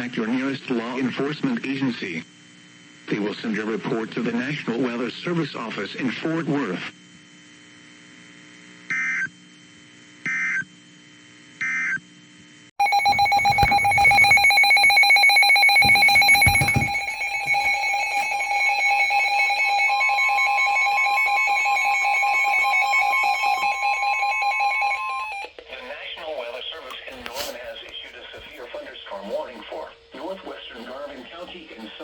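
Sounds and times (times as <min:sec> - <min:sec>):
electronic alert with ringing flutter: 0:12.8 - 0:25.4
data tone bursts: 0:12.8 - 0:25.5.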